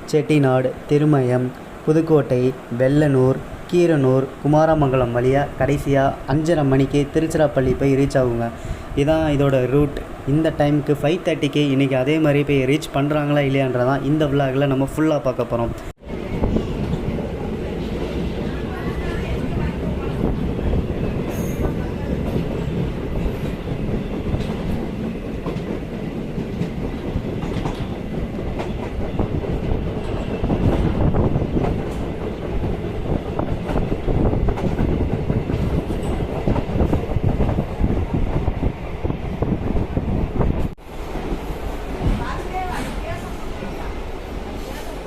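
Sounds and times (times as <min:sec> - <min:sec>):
train coach rumbling: 0:00.0 - 0:45.0
train wheels clickety-clack: 0:16.2 - 0:43.4.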